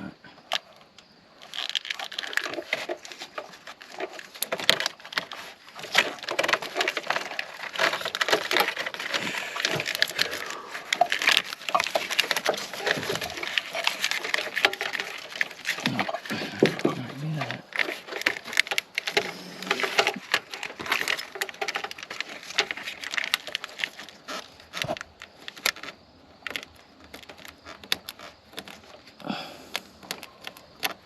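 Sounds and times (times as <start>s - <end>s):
plastic clips clicking and cracking: 0.5s - 31.0s.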